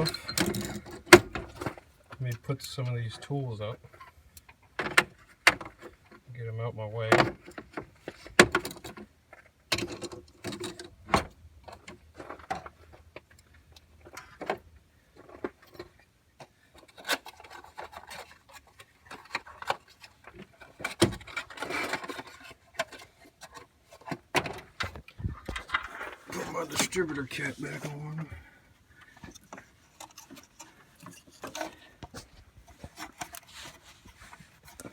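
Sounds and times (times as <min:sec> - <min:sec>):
metal tools clinking: 0:00.0 - 0:01.0
rustling: 0:16.6 - 0:34.9.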